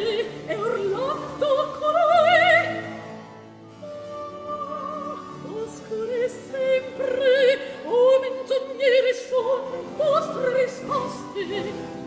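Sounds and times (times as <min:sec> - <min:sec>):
opera voices singing with vibrato: 0:00.0 - 0:03.2, 0:03.8 - 0:12.0.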